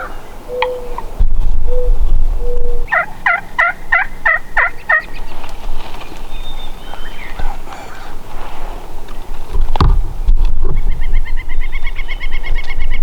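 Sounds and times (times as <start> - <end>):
turkey gobbling: 2.6 - 5.2.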